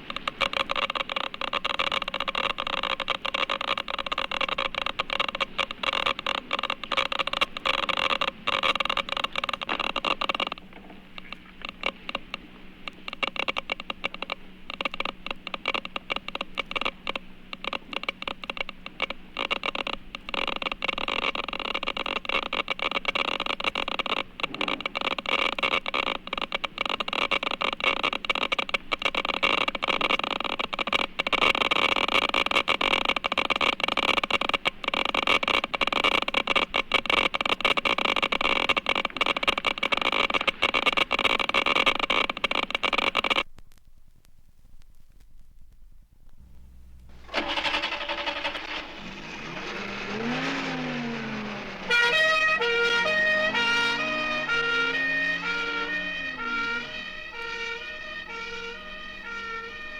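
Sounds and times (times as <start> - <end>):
car running sound: 0.0 - 43.5, 46.1 - 59.9
police car siren: 47.4 - 59.9.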